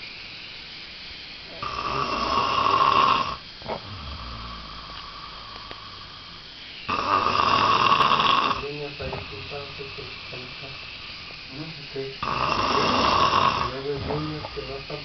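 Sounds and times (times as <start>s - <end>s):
quiet breathing: 1.1s - 15.0s
loud rasping snore: 1.6s - 15.0s.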